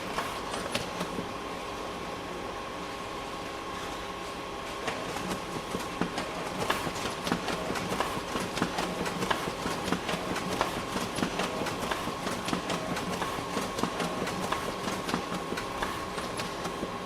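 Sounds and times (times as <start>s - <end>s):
photocopier humming and whirring: 0.0s - 17.0s
rapid mechanical clicking: 4.8s - 17.0s.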